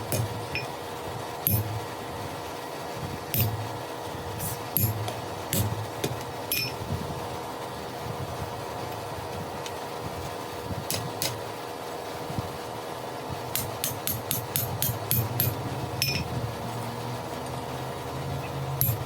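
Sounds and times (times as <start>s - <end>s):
hammer striking iron on anvil: 0.0s - 0.7s, 1.5s - 1.9s, 3.3s - 3.8s, 4.4s - 6.8s, 13.5s - 16.3s, 18.8s - 19.0s
steady hum: 0.0s - 19.0s.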